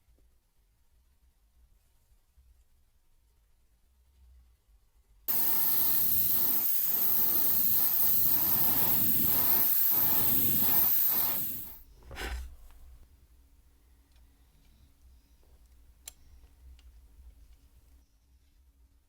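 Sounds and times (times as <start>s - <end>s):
pressurised spray hissing: 5.3s - 11.8s.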